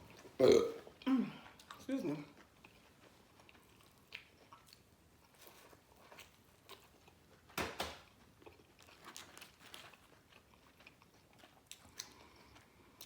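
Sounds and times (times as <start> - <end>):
person chewing food: 0.0 - 13.0
food crunch: 8.0 - 13.0.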